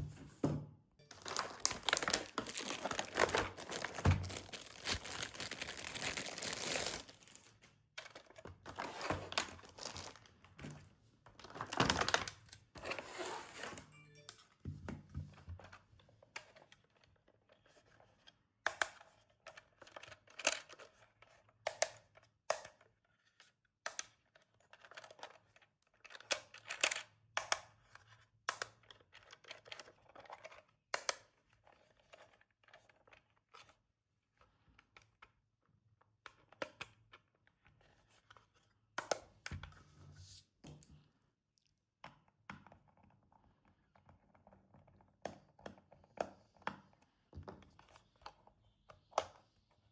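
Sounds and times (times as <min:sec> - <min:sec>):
cardboard and plastic tearing: 0:01.1 - 0:07.6, 0:08.7 - 0:10.3
packaging being opened by hand: 0:01.1 - 0:10.3, 0:11.4 - 0:13.8.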